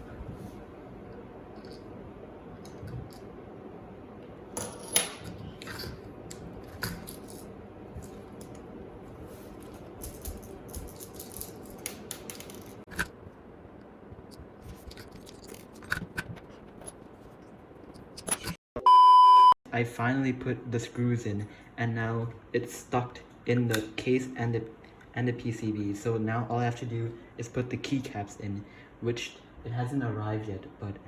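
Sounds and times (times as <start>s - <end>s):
keyboard parts clicking and scraping: 14.2s - 18.6s.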